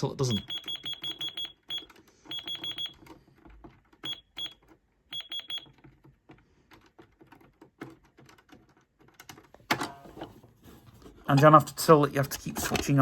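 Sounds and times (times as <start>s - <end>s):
toy cash register beeping: 0.2s - 3.0s, 4.0s - 5.8s.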